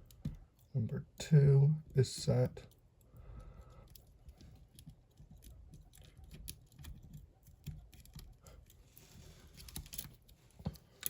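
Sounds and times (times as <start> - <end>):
lock pick clicking and scraping: 3.7 - 8.8, 9.4 - 11.0.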